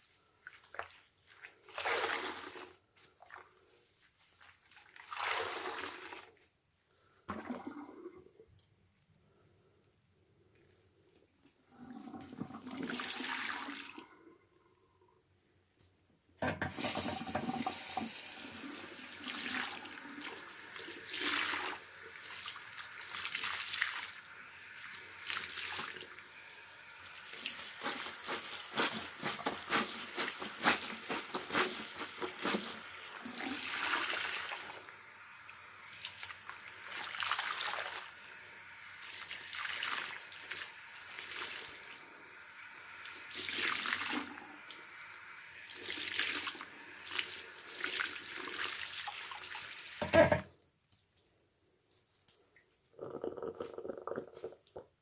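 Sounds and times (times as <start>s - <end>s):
soapy water gushing from sponge: 0.2s - 6.5s, 16.8s - 50.0s.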